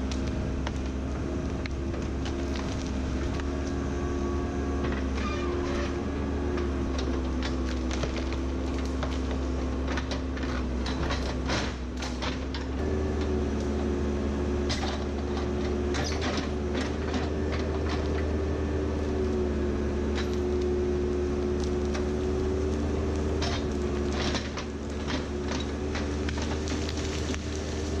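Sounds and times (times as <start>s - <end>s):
diesel engine under load: 0.0s - 28.0s
hydraulic whine: 3.7s - 7.2s.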